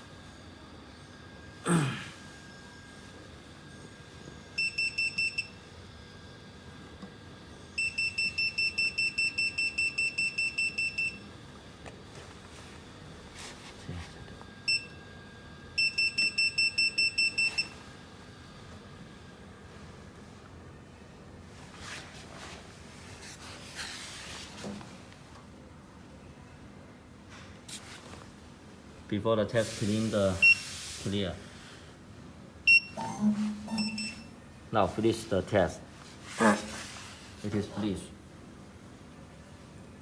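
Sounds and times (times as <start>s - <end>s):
rapid electronic beeps: 32.7s - 34.3s.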